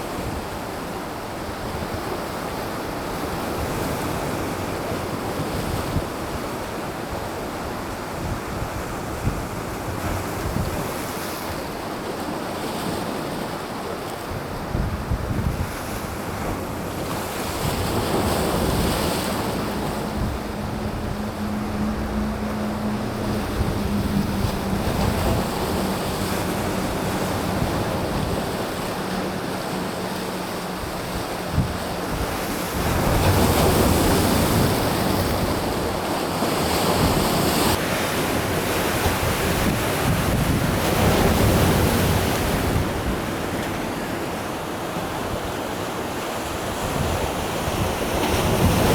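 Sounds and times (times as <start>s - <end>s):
waves washing on rocky shore: 0.0s - 48.9s
wind buffeting microphone: 14.3s - 43.9s
low steady hum: 18.0s - 33.8s.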